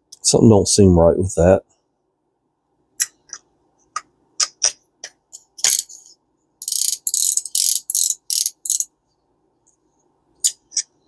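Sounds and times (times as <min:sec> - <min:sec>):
fishing reel parts clicking: 0:06.6 - 0:08.9
ratchet-like rasping clicks: 0:06.6 - 0:08.9.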